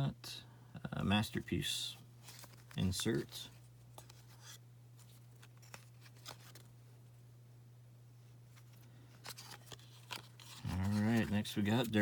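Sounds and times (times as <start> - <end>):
steady low hum: 0.0 - 12.0
soft clicks of cards handled: 2.2 - 6.7.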